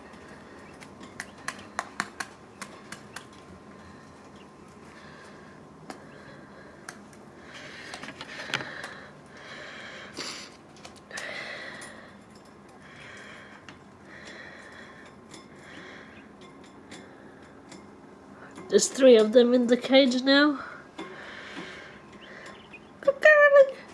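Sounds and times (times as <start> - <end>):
birds scratchy chatter: 0.0 - 6.7, 14.2 - 17.7, 21.1 - 23.9.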